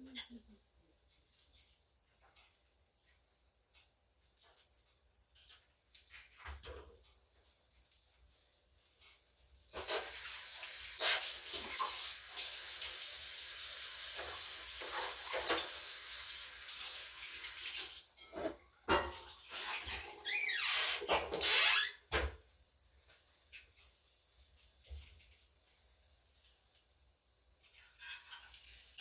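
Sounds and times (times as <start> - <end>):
tap water running into sink: 9.0 - 22.5.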